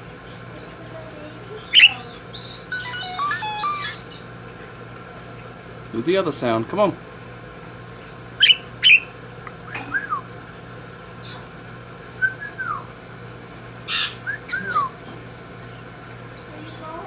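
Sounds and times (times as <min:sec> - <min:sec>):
starling calling and whistling: 0:01.5 - 0:04.3, 0:08.4 - 0:10.4, 0:12.2 - 0:12.9, 0:13.8 - 0:15.1.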